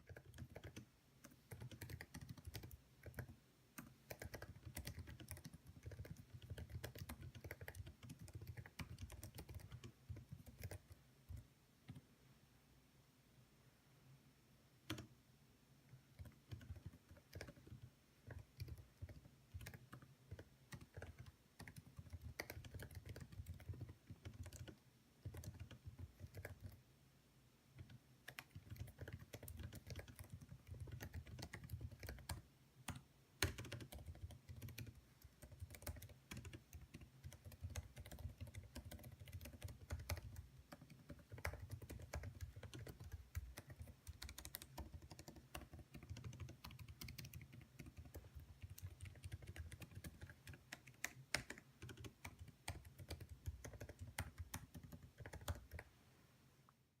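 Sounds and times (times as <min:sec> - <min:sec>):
fast typing on keyboard: 0:00.0 - 0:12.0, 0:14.9 - 0:15.1, 0:16.1 - 0:26.8, 0:27.8 - 0:55.9.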